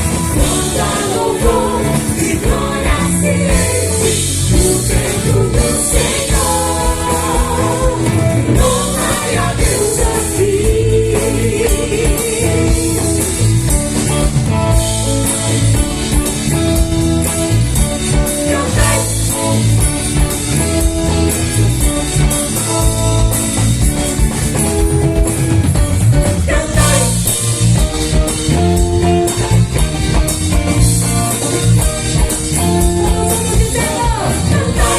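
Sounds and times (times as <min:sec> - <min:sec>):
people singing: 0:00.0 - 0:13.4, 0:18.3 - 0:19.7, 0:26.4 - 0:27.5, 0:33.0 - 0:34.9
electric guitar: 0:00.0 - 0:34.9
worship band playing: 0:00.0 - 0:34.9.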